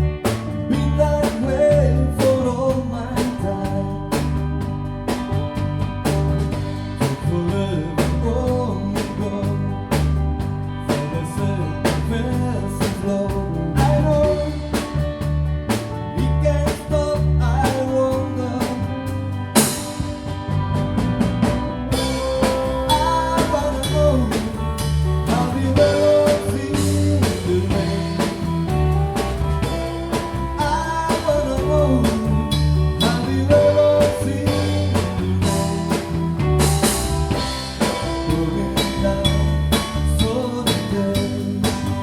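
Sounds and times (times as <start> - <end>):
rock band playing: 0.0 - 42.0.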